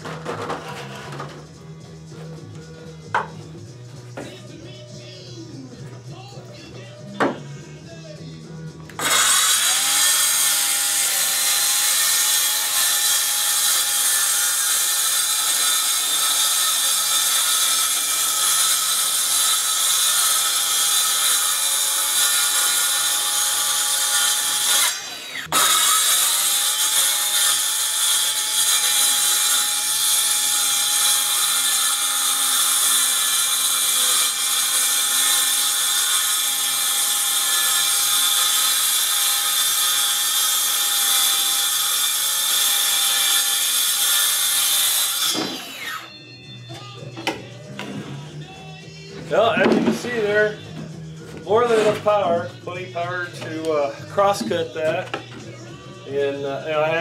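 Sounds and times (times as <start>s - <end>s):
circular saw cutting plywood: 9.0s - 46.2s.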